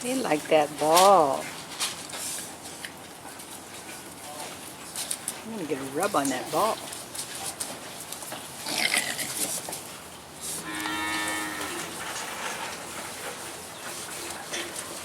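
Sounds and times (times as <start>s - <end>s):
cow mooing: 10.6s - 12.0s.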